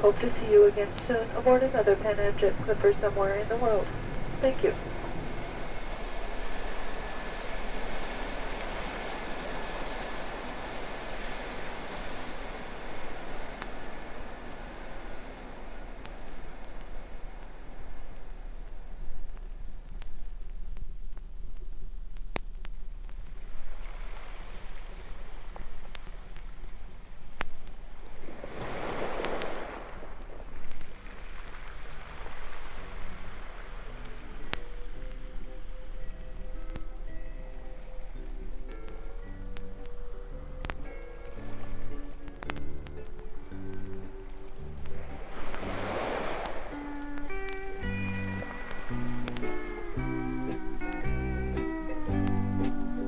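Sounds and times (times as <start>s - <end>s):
ocean surf rushing: 0.0s - 19.1s, 23.3s - 26.8s, 27.7s - 39.3s, 39.9s - 53.0s
faint tune: 0.0s - 20.7s, 32.6s - 53.0s
jet engines running at low power: 0.0s - 53.0s
record surface clicks: 42.1s - 45.6s.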